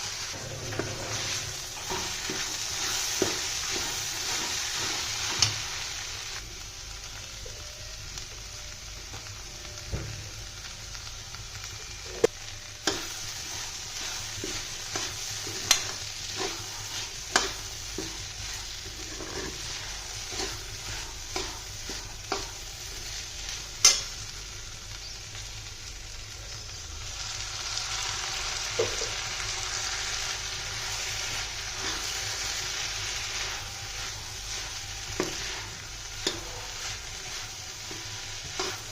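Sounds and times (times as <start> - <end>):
vegetables sizzling in a pan: 0.0 - 38.9
spoon knocking and scraping pan: 0.4 - 5.6, 14.4 - 22.6, 35.1 - 38.9.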